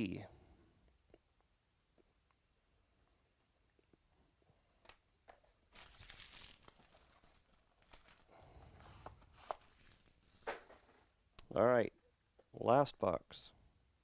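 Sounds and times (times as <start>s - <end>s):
plastic wrapping crinkling and tearing: 5.7s - 10.6s.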